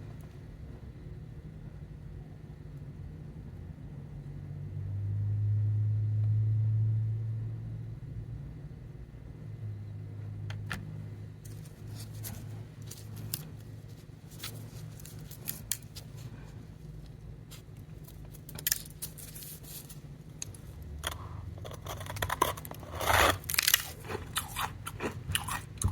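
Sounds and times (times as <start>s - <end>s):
low steady hum: 0.0s - 25.9s
ice crunching being chewed: 11.5s - 16.3s, 17.5s - 25.9s
ice clicking and cracking: 20.4s - 25.9s.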